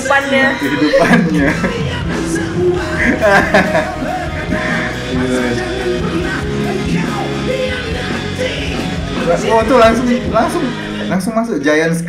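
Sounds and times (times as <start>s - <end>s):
live slow rock band with guitar: 1.0s - 9.4s.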